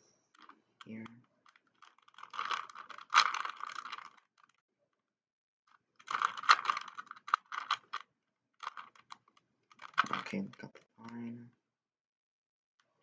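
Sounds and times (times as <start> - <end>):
puzzle cube layers clicking: 0.4 - 4.3, 5.7 - 10.6.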